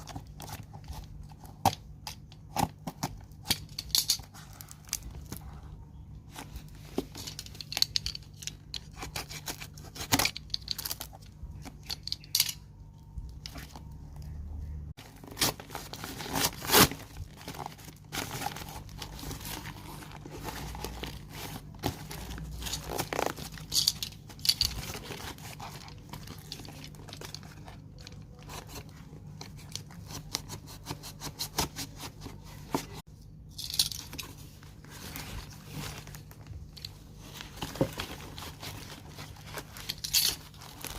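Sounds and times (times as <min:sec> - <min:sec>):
low steady hum: 0:00.0 - 0:40.9
packaging tearing and crinkling: 0:15.0 - 0:28.9.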